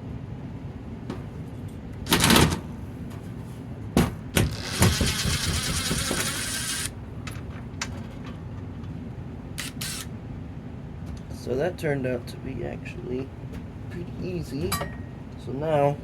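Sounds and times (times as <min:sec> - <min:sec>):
sharp knocks on panel: 0:04.0 - 0:06.2.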